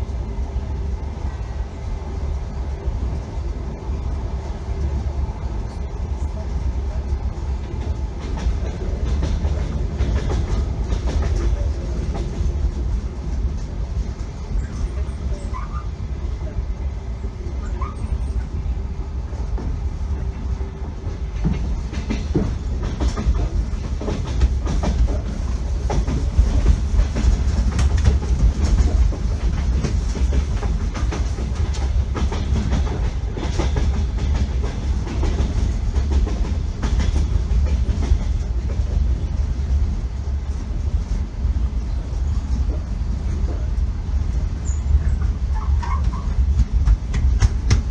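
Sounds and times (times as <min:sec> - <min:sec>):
low train rumble: 0:00.0 - 0:47.9
train wheels knocking over rail joints: 0:07.9 - 0:12.5, 0:21.1 - 0:38.9, 0:45.7 - 0:47.9.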